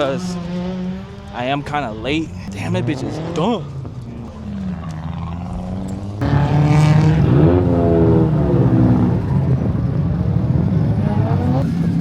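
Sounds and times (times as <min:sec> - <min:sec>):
car engine revving hard: 0:06.2 - 0:12.0.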